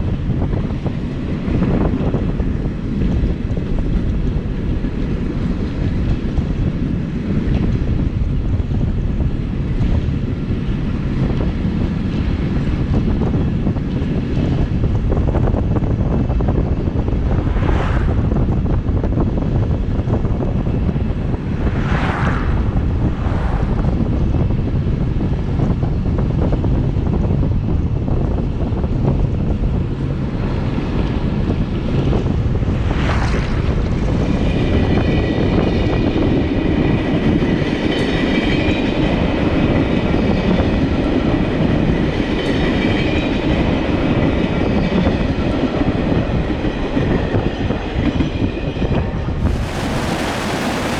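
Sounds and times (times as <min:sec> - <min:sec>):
train rumbling on rails: 0:00.0 - 0:50.9
brief whooshes: 0:17.2 - 0:18.6, 0:21.5 - 0:24.2, 0:32.6 - 0:34.2
high whine: 0:49.4 - 0:50.9.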